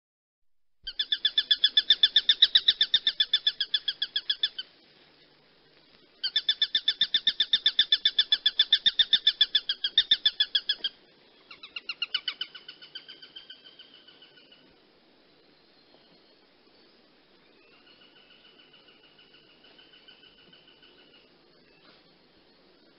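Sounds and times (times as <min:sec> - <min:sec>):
hawk calling: 0:00.8 - 0:04.7, 0:06.2 - 0:14.8.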